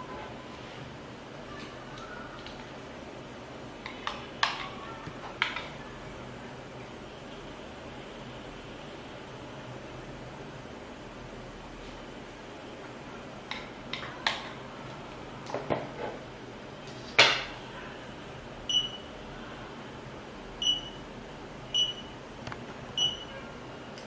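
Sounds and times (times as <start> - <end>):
high key-press beeps: 18.7 - 19.1, 20.6 - 21.0, 21.7 - 22.1, 23.0 - 23.3.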